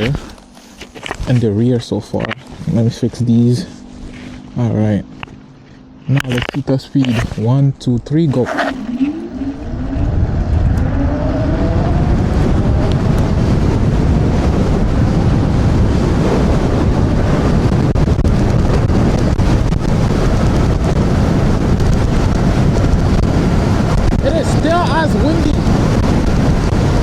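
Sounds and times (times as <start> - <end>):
wind buffeting microphone: 8.2 - 27.0
electric scooter motor whine: 8.5 - 16.2.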